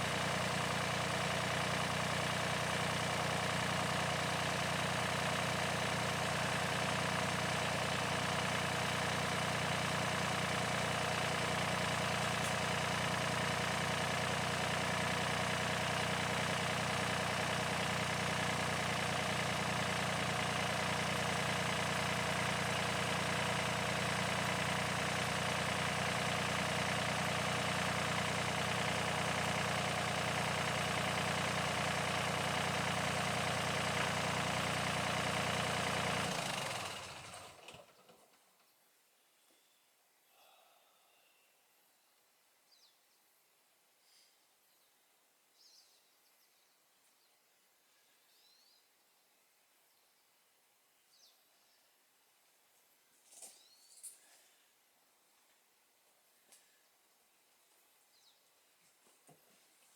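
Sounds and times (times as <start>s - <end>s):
excavator diesel engine running: 0.0s - 37.9s.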